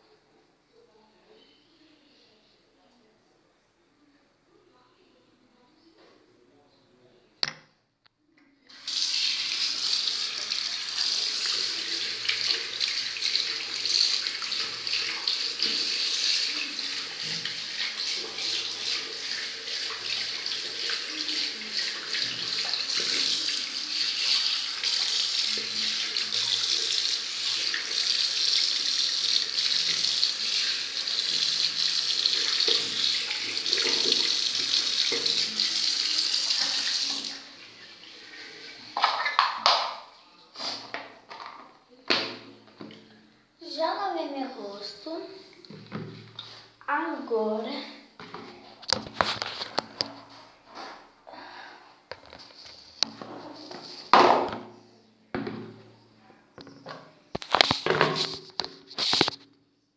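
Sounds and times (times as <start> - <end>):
tap running into sink: 29.4 - 37.3, 39.0 - 40.1, 48.2 - 50.2, 56.6 - 59.4.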